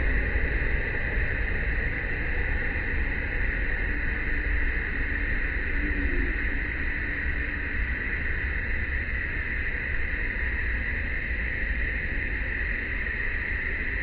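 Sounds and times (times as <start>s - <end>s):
high-pitched drone: 5.6s - 8.4s.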